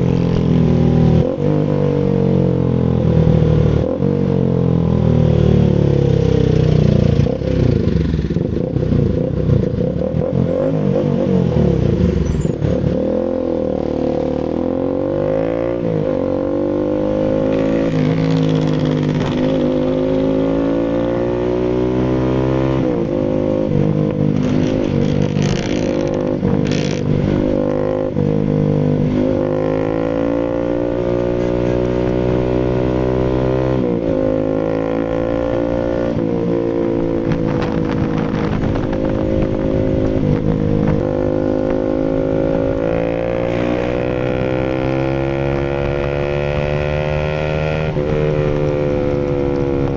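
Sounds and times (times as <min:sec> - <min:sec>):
motorcycle engine revving: 0:00.0 - 0:49.9.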